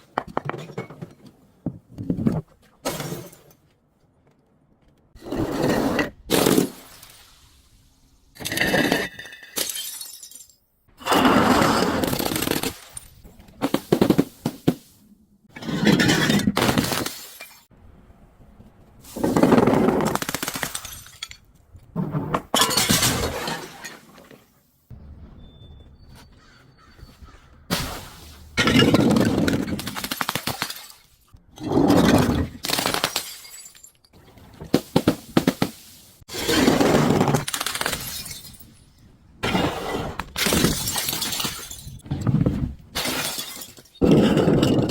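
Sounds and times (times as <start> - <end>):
objects crunching and breaking: 27.9 - 31.0, 39.4 - 44.9.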